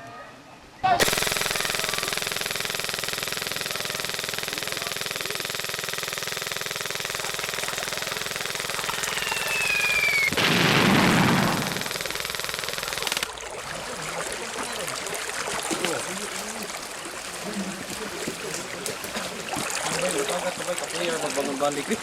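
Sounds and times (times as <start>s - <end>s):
rapid machine-gun fire: 1.0s - 13.3s
falling whistle: 9.0s - 10.4s
loud explosion blast: 10.4s - 11.7s.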